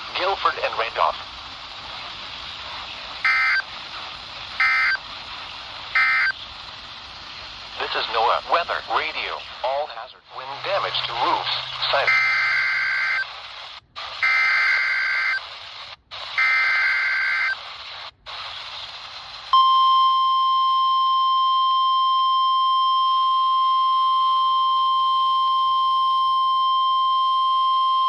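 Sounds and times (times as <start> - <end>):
radio hiss: 0.0 - 19.7
buzzing digital data bursts: 3.2 - 3.7, 4.6 - 5.0, 5.9 - 6.4, 11.7 - 13.4, 14.1 - 15.6, 16.3 - 17.8
steady warning alarm tone: 3.2 - 3.7, 4.6 - 5.0, 6.0 - 6.4, 10.9 - 13.3, 14.2 - 15.5, 16.4 - 17.6, 19.6 - 28.0.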